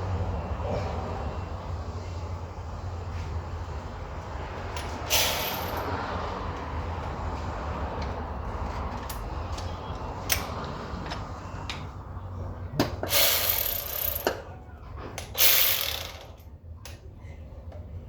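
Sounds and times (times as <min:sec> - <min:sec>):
socket ratchet clicking: 0:15.4 - 0:16.4.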